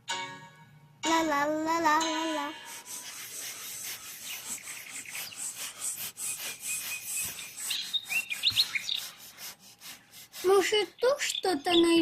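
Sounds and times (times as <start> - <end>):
short rising bird chirps: 3.9 - 9.3.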